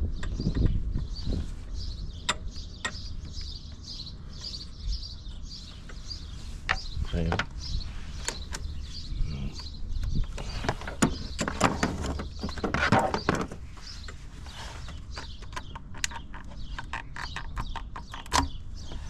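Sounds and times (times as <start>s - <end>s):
hand tools and parts rattling: 10.0s - 19.0s
handling scrape: 12.8s - 15.2s.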